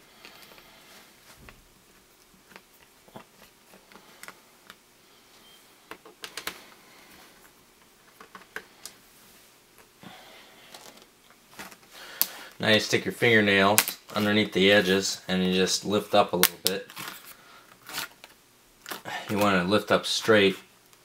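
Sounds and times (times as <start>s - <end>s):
plastic case being handled: 10.7s - 11.9s.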